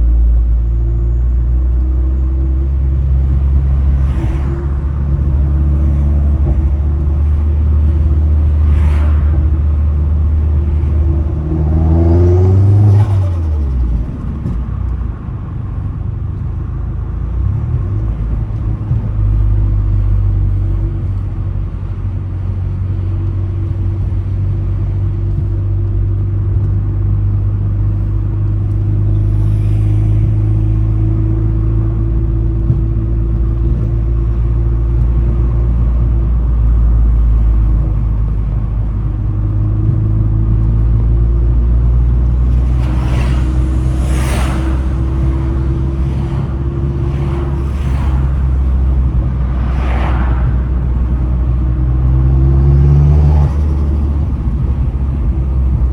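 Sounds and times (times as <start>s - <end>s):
car engine revving: 0.0s - 16.6s, 25.2s - 55.9s.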